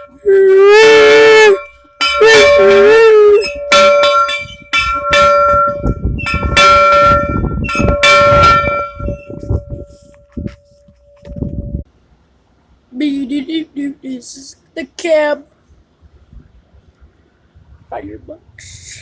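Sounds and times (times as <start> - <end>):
locomotive bell ringing: 0.0 - 11.8.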